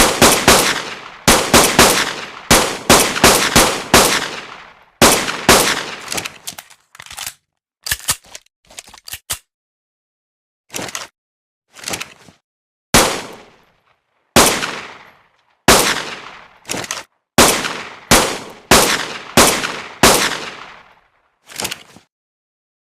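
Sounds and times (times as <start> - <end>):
pistol gunshots with echo: 0.0 - 6.2, 13.0 - 13.6, 14.4 - 16.6, 17.4 - 21.0
quiet gun clicks: 5.3 - 9.4.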